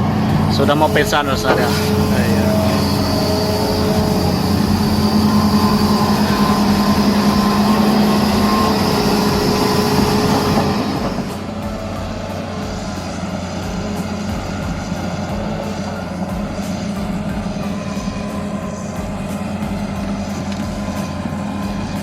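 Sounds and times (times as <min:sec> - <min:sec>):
heavy diesel engine humming: 0:00.0 - 0:22.0.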